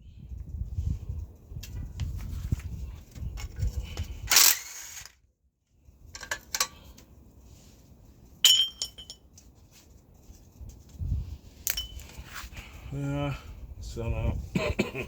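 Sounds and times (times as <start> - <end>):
metal tools clinking: 8.3 - 9.5, 11.6 - 12.3
sharp metallic clink: 11.7 - 12.1.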